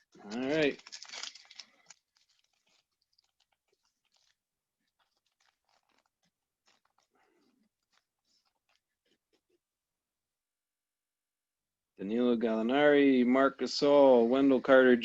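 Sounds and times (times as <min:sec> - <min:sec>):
wrapper crinkling: 0:00.0 - 0:09.2.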